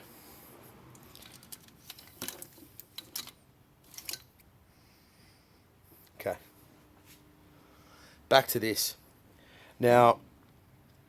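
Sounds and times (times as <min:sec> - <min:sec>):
car parts clicking and rattling: 0:00.9 - 0:04.5.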